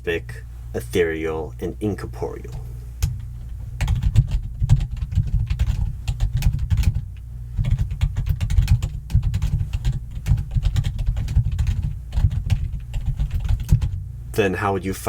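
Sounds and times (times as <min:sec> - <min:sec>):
fast typing on computer keyboard: 0:03.8 - 0:07.0, 0:07.6 - 0:14.0.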